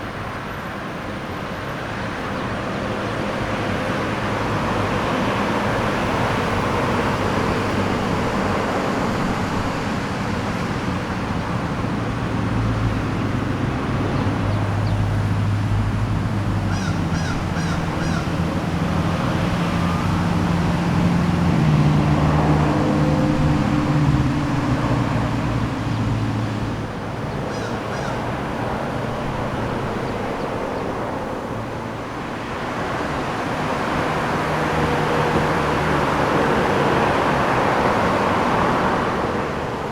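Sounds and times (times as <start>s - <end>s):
vehicles passing: 0.0s - 39.9s
bird calling: 16.6s - 18.6s, 27.3s - 28.4s.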